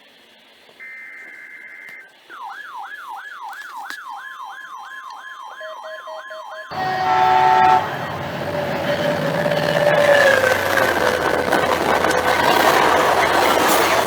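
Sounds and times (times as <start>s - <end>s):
electronic siren yelping: 0.8s - 14.0s
loud multi-tone horn blast: 6.7s - 14.0s.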